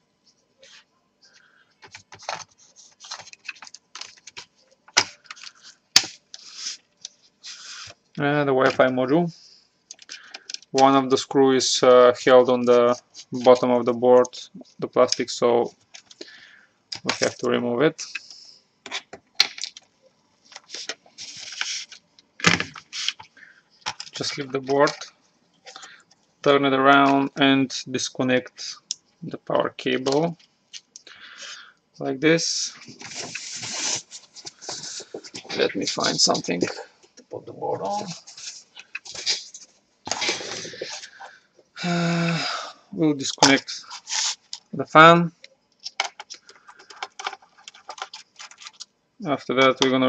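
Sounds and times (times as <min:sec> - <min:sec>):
clicks and scrapes of laptop parts: 0:45.8 - 0:48.9.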